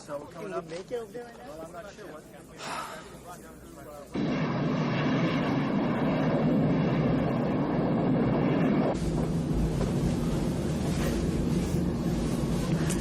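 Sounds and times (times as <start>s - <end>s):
jet airliner engine drone: 4.2s - 13.0s.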